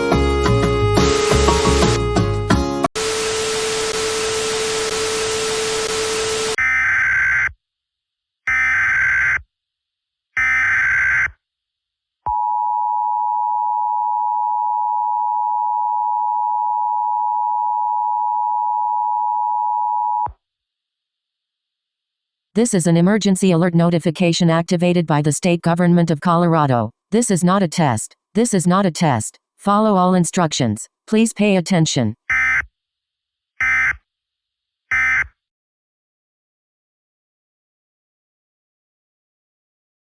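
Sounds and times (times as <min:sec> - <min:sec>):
music: 0:00.0 - 0:02.9
two-tone alert signal: 0:01.1 - 0:02.0
static hiss with low tone: 0:03.0 - 0:06.6.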